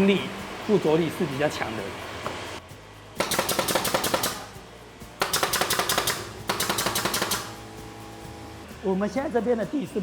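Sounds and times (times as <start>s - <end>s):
nail gun firing: 3.2s - 4.5s, 5.2s - 7.6s.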